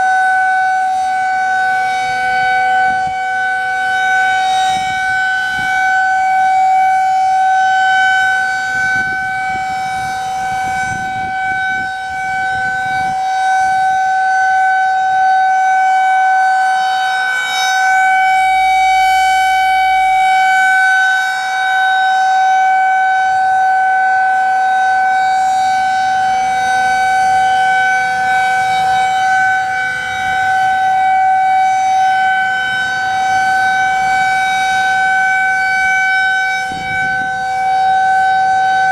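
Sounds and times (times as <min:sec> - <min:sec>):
rotating warning siren: 0:00.0 - 0:38.9.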